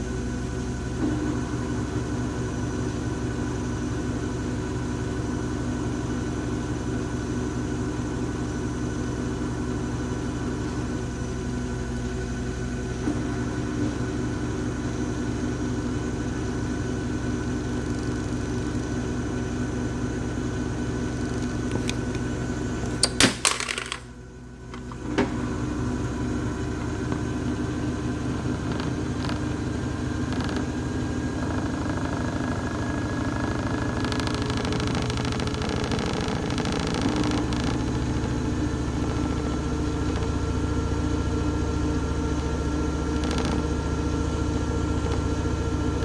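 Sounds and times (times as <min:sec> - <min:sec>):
washing machine motor hum: 0:00.0 - 0:46.0.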